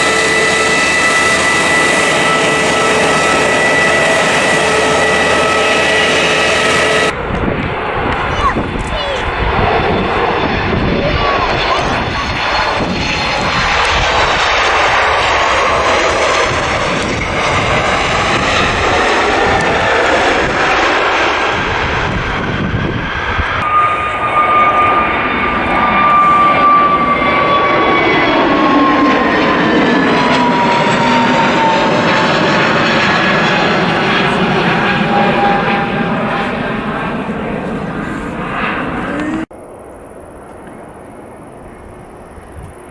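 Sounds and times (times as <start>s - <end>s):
high engine whine falling in pitch: 0.0s - 7.2s, 23.6s - 39.5s
jet airliner passing: 0.0s - 42.9s.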